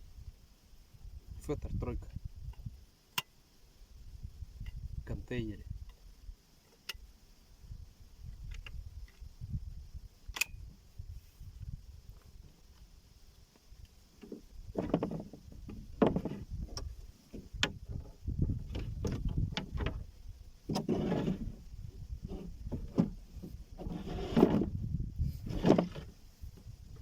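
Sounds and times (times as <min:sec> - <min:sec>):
gear and boat knocking and scraping: 0:14.2 - 0:20.1, 0:20.7 - 0:24.8, 0:25.4 - 0:27.0.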